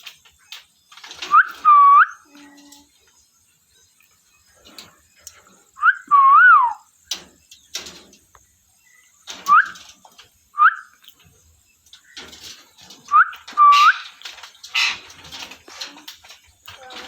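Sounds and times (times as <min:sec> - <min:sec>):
parrot whistled chirps: 0:05.8 - 0:06.8.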